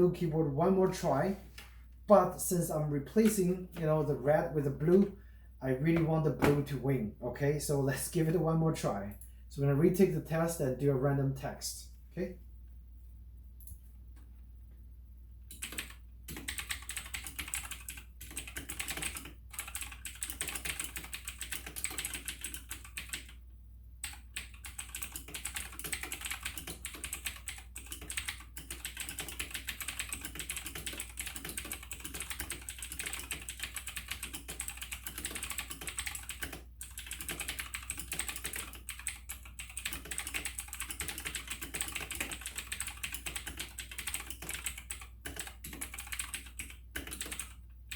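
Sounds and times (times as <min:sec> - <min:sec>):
mechanical keyboard typing: 0:15.5 - 0:23.4, 0:24.0 - 0:47.9.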